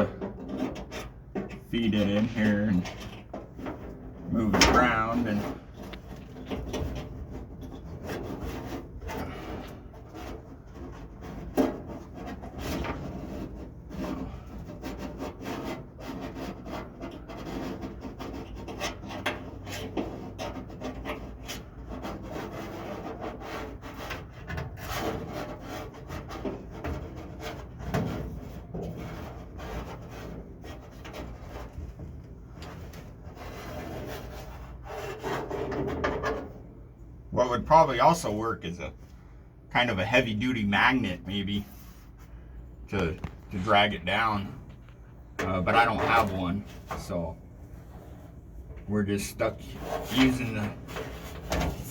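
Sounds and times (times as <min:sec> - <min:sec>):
screwdriver scraping in sheet metal: 0:00.0 - 0:36.5, 0:49.4 - 0:51.9.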